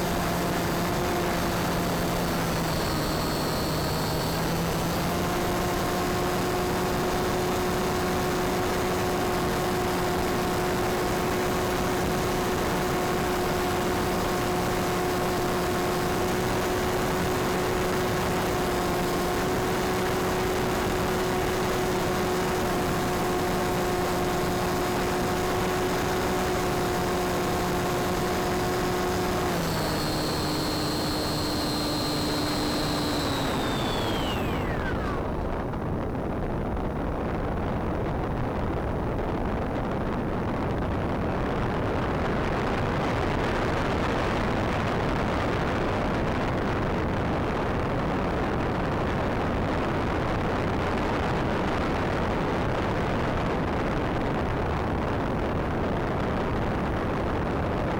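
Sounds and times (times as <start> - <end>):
electric propeller motor whining: 0.0 - 8.4, 13.4 - 35.9.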